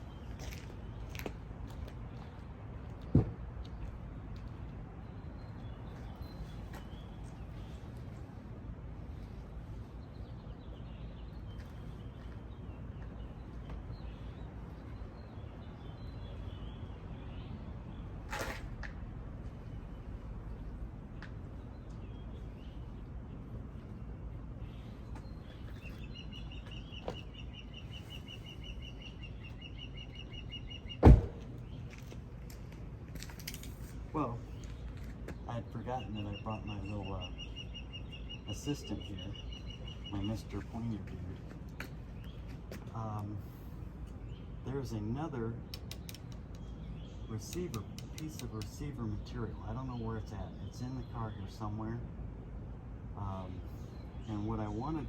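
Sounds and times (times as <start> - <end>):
low outdoor rumble: 0.0 - 55.0
bird trilling: 24.7 - 31.8, 35.4 - 40.9
loud thump: 31.0 - 31.5
faint bird chirps: 34.3 - 41.0.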